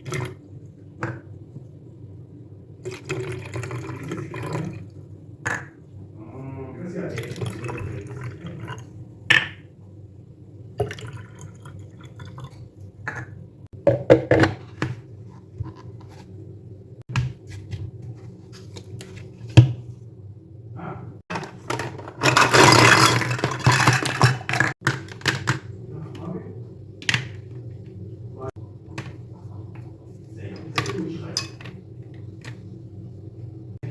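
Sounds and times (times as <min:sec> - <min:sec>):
water pouring: 0:00.0 - 0:00.5, 0:02.8 - 0:05.0, 0:07.1 - 0:09.0, 0:10.8 - 0:12.8.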